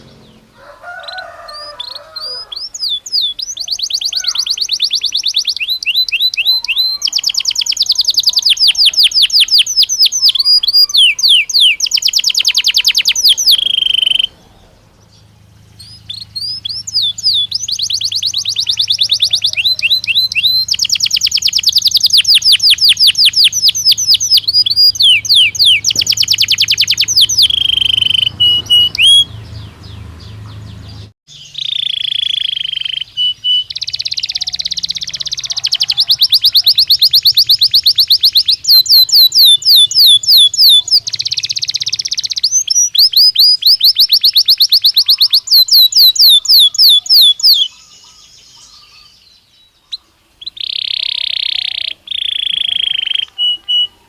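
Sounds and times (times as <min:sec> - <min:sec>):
canary singing trills: 0:00.0 - 0:54.0
faint low hum: 0:13.1 - 0:21.8.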